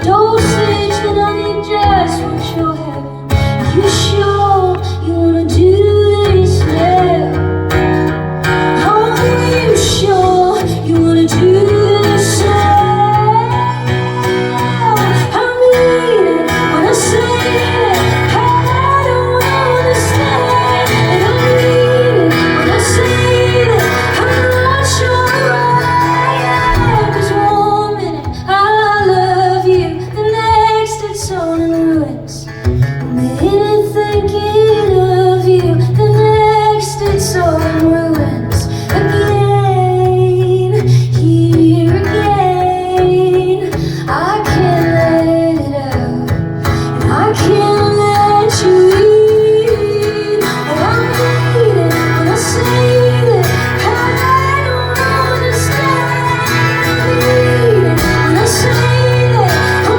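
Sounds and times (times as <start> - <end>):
person singing: 8.8 - 32.3, 33.2 - 59.9
live band music: 25.3 - 28.8.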